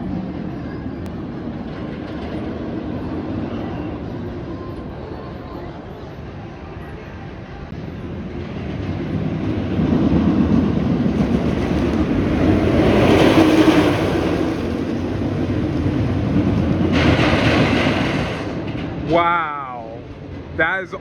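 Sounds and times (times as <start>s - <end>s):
roller coaster train rumbling: 0.0s - 21.0s.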